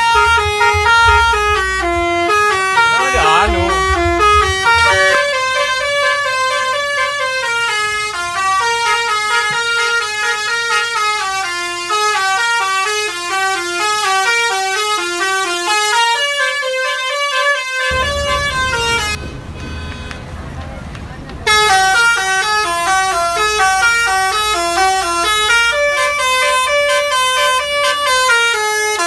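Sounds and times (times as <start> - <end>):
low rumble: 0.0 - 8.5, 17.9 - 20.5
musical bus horn melody: 0.0 - 19.2, 21.5 - 29.0.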